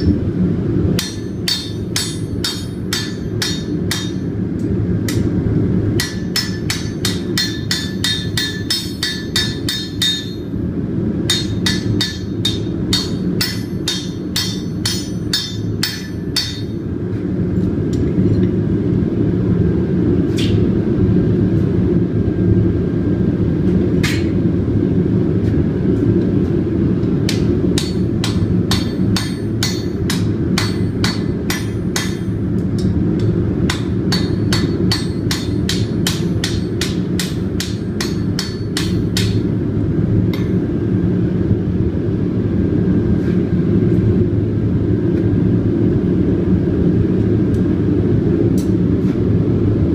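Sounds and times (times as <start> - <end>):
steady low hum: 0.0 - 49.9
hammer striking steel on anvil: 1.0 - 4.3, 5.0 - 5.4, 6.0 - 10.6, 11.2 - 16.8, 24.0 - 24.4, 27.3 - 39.5, 40.3 - 40.6.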